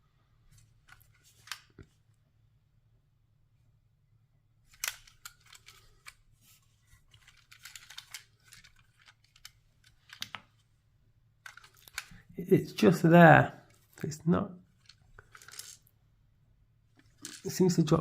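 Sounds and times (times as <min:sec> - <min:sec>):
plastic bricks clicking and rattling: 0:04.7 - 0:06.2, 0:07.1 - 0:10.4, 0:11.4 - 0:12.3, 0:14.8 - 0:15.9, 0:17.0 - 0:17.6.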